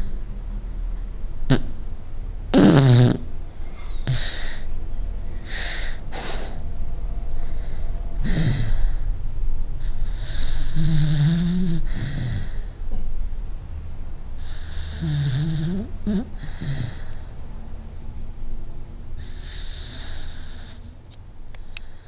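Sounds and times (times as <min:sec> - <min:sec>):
dog snoring: 0:02.5 - 0:04.7, 0:07.4 - 0:09.1, 0:09.8 - 0:12.8, 0:14.4 - 0:17.3, 0:19.2 - 0:20.9.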